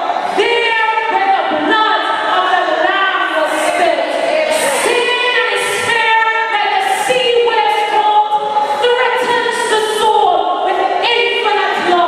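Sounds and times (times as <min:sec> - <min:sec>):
choir singing: 0:00.0 - 0:08.0.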